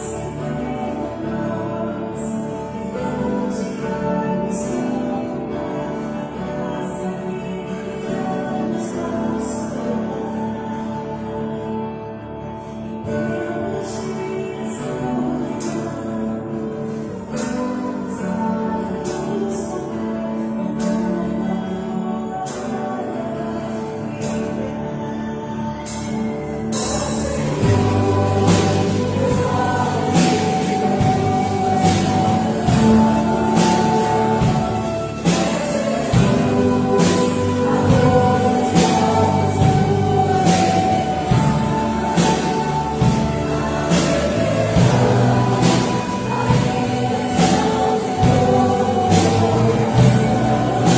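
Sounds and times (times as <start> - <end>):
church band playing slow song: 0.0 - 50.9
faint singing: 0.0 - 50.9
band playing held chords: 25.9 - 50.9.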